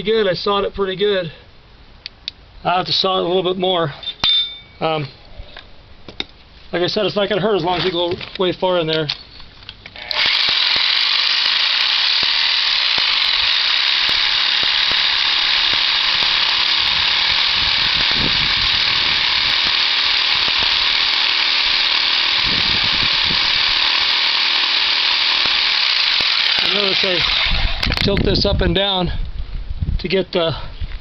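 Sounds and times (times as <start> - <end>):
power tool cutting steel: 10.0 - 28.0.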